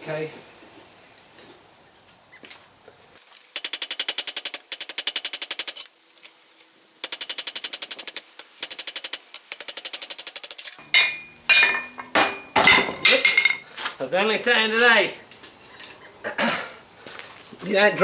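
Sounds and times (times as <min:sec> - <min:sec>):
hammer blows on steel and anvil: 0:07.1 - 0:13.6.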